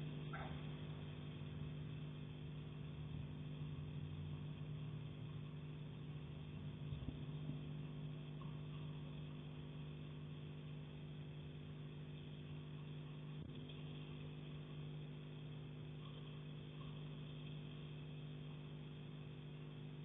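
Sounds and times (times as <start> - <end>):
low mechanical hum: 0.0 - 20.0.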